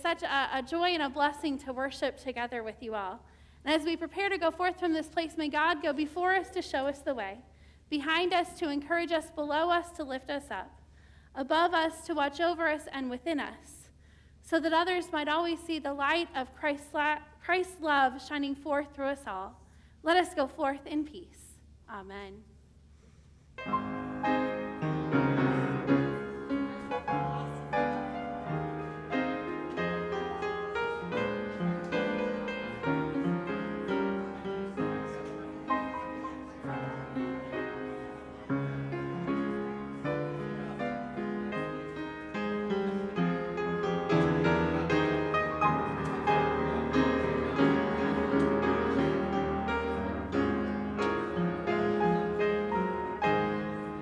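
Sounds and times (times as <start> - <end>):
piano piece: 23.6 - 54.0.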